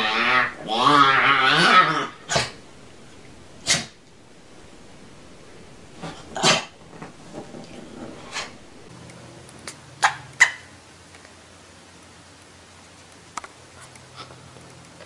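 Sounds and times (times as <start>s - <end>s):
pet animal sharp noisy sounds: 0.0s - 8.9s.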